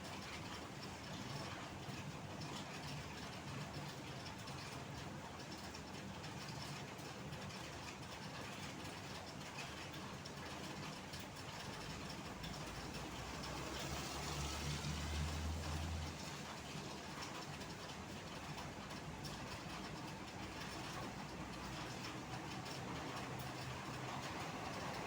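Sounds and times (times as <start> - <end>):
wet tyres on road: 11.7 - 19.9, 20.7 - 25.0
rain hiss: 11.8 - 25.0
large vehicle engine passing: 13.2 - 16.3.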